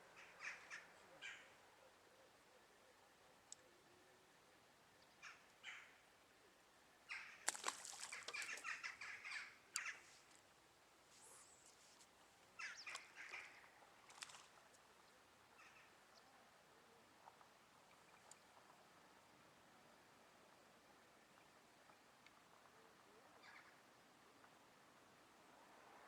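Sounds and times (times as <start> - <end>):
birds calling harshly: 0.1 - 1.5, 7.1 - 10.2, 12.6 - 13.7.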